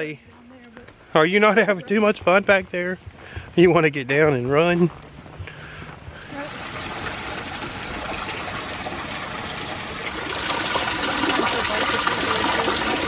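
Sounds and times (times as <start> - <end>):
creek water rushing: 6.1 - 13.0.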